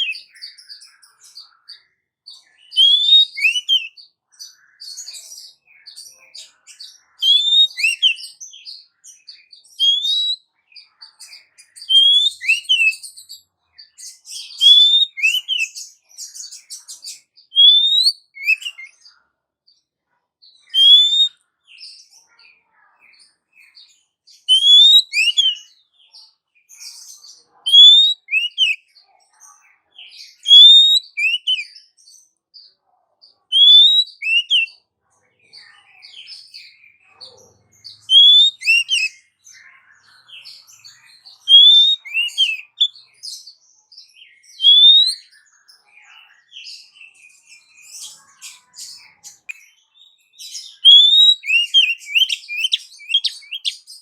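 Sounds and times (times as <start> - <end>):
scratchy bird chattering: 2.8 - 3.9, 7.2 - 8.2, 9.8 - 10.4, 11.9 - 13.0, 14.6 - 15.7, 17.6 - 18.9, 20.7 - 21.3, 24.5 - 25.6, 33.5 - 34.7, 38.0 - 39.1, 41.5 - 43.0, 44.6 - 45.2, 50.8 - 53.9.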